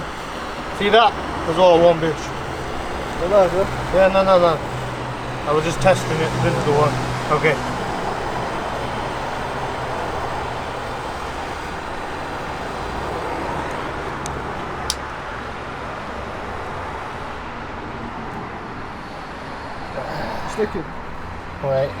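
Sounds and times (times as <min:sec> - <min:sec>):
blowtorch flame hissing: 0:00.0 - 0:17.4.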